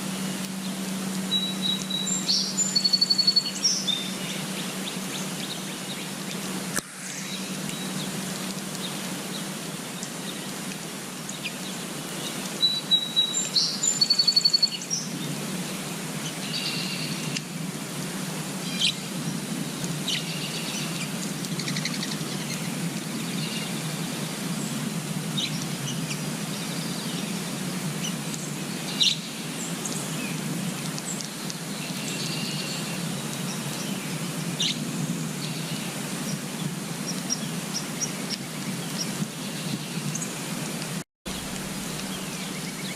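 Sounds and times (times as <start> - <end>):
outdoor background hiss: 0.0 - 42.9
small birds chirping: 0.4 - 6.4, 7.0 - 17.4, 41.3 - 42.9.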